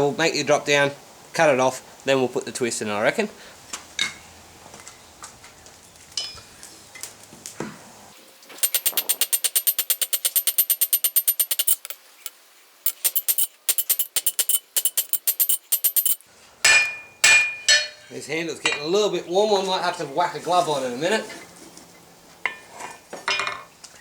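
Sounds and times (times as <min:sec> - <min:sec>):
hammer ringing on anvil: 0:13.0 - 0:18.9
heavy hammer strikes: 0:16.6 - 0:18.1.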